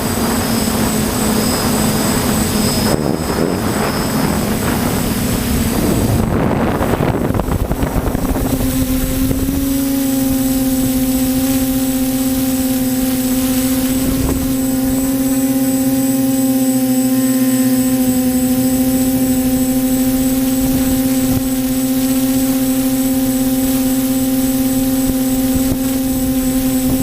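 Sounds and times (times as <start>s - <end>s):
drone propellers buzzing: 0.0s - 27.0s.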